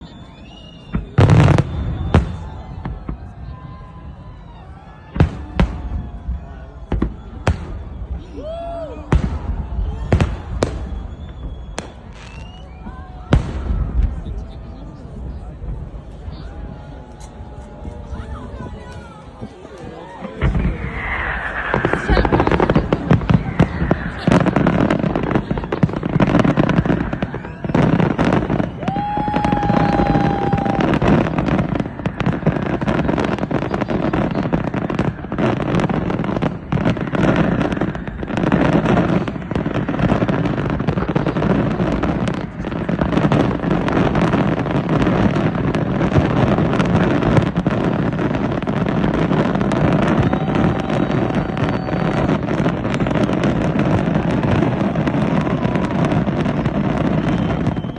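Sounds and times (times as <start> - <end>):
steady whistle: 0.0 - 4.5, 9.6 - 13.2, 20.5 - 35.3, 49.8 - 52.5, 56.3 - 57.9
fireworks crackling and banging: 0.0 - 57.9.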